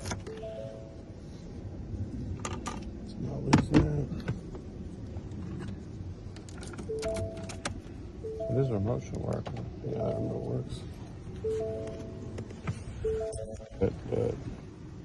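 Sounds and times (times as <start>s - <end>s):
electronic beep tones: 0.3s - 1.0s, 6.9s - 7.6s, 8.2s - 8.9s, 9.9s - 10.6s, 11.4s - 13.9s
car keys jangling: 6.4s - 7.8s.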